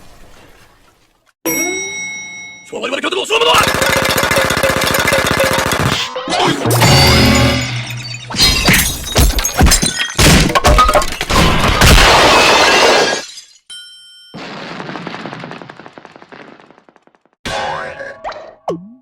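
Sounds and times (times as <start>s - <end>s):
high ringing tone: 1.5s - 2.8s
cartoon crash with glassy clinks: 3.5s - 13.6s.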